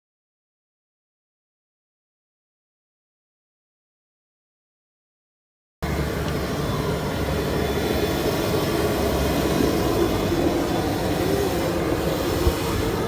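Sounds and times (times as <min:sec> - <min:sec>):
vehicle rumbling in motion: 0:05.8 - 0:13.0.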